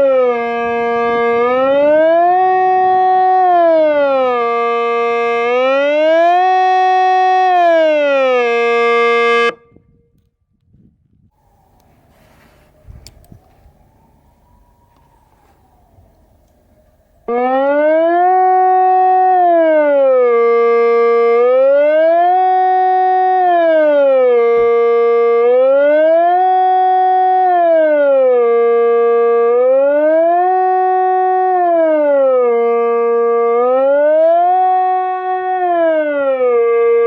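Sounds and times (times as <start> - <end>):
electronic siren wailing: 0.0 - 9.9, 11.3 - 37.0.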